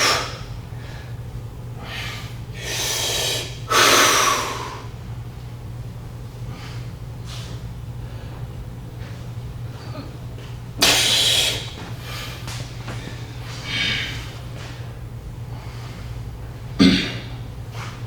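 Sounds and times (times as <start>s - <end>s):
person breathing hard: 0.0s - 1.2s, 1.8s - 5.0s, 10.8s - 14.4s
steady low hum: 0.0s - 18.0s
person coughing: 10.8s - 11.8s, 16.8s - 17.3s.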